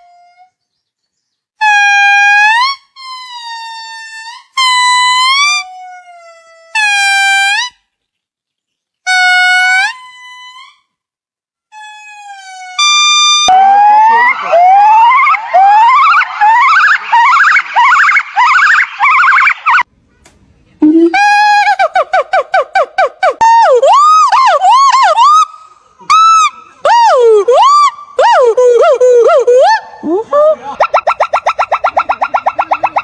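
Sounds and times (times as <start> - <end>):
short rising calls overlapping: 12.4 - 19.8, 20.9 - 33.0.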